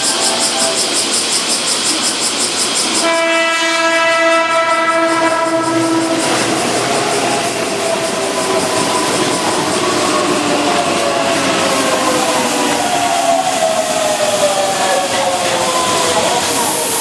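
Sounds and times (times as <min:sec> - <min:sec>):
train running noise: 0:00.0 - 0:17.0
train horn blast: 0:03.0 - 0:06.5.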